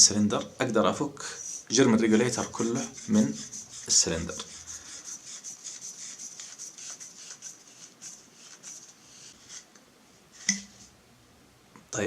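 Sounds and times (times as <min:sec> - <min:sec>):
metal threads rasping: 0:01.4 - 0:08.0.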